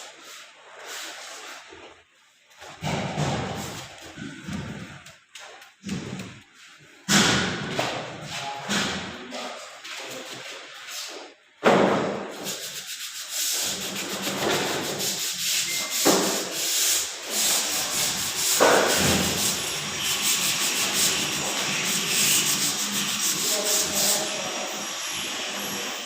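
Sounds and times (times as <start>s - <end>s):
sandpaper rubbing: 0.0s - 1.8s, 12.3s - 24.8s.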